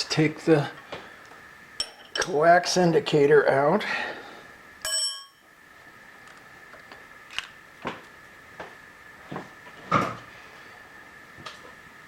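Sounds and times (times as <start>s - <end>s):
faint steady high tone: 4.8s - 5.6s.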